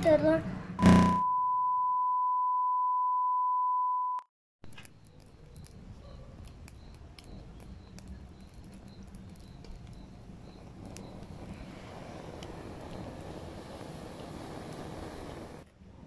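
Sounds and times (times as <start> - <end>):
outdoor background noise: 0.0 - 1.2, 4.6 - 16.0
electronic beep: 0.8 - 4.3
campfire crackling: 4.6 - 16.0.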